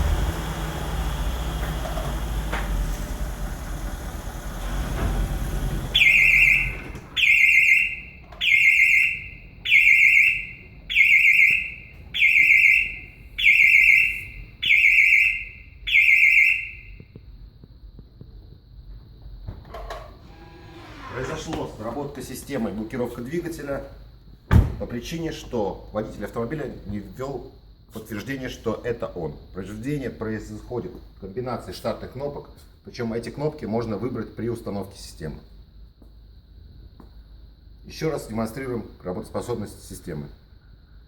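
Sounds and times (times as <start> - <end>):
car engine idling: 0.0 - 6.8
alarm warbling high beeps: 6.0 - 16.8.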